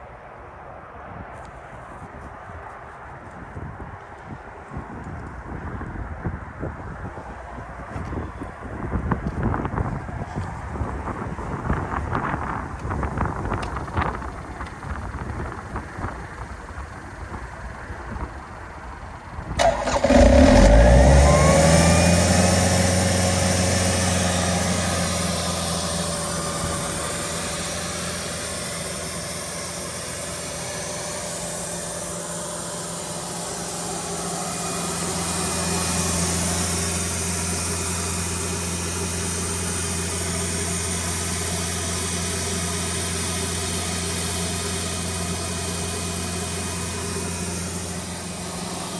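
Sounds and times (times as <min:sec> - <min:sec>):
diesel compressor engine running: 0:10.8 - 0:48.9.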